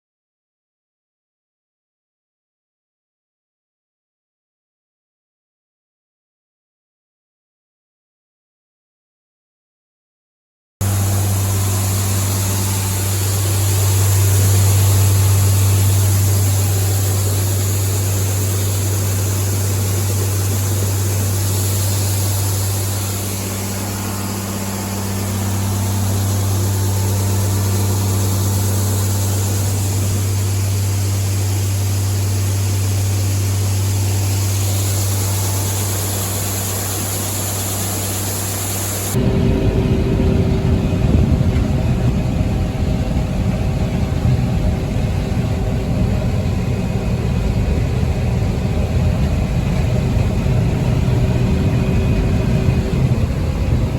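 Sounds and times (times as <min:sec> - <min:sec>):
different engine sound: 0:10.8 - 0:53.9
farm machinery droning: 0:10.8 - 0:53.9.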